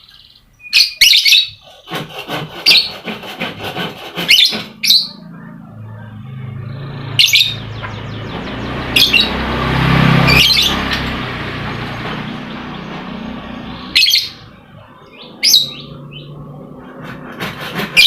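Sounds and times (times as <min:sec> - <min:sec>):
bird chirps: 0:00.0 - 0:01.6, 0:04.3 - 0:09.4, 0:13.6 - 0:16.4
noisy rush: 0:04.7 - 0:18.0.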